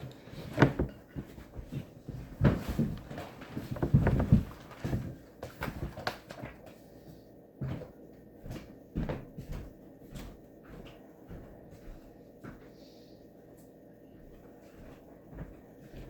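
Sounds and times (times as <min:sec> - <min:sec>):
objects knocking and clattering: 0:00.0 - 0:06.7.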